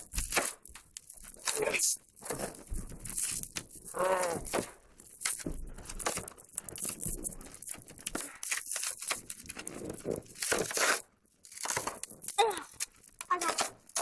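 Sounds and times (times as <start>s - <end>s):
packaging tearing and crinkling: 0.0s - 14.0s
person exclaiming: 12.4s - 13.6s.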